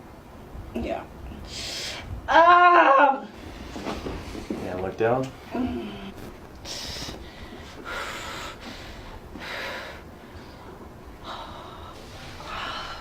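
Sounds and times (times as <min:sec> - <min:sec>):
person breathing: 0:05.5 - 0:13.0.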